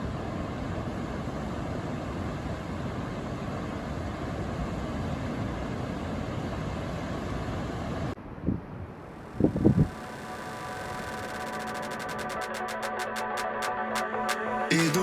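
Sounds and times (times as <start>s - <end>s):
wind: 0.0s - 11.6s.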